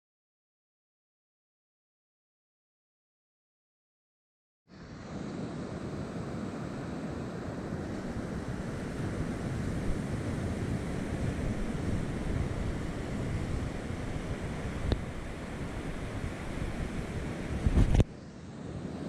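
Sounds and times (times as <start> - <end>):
ocean surf washing on beach: 4.7 - 19.0
wind buffeting microphone: 5.3 - 18.1.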